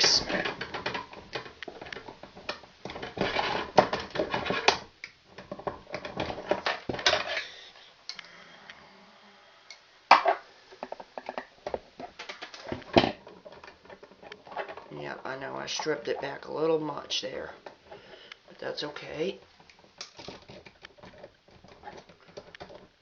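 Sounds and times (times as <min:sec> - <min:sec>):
tools and wires clicking and scraping: 0:00.0 - 0:08.2, 0:10.7 - 0:23.0.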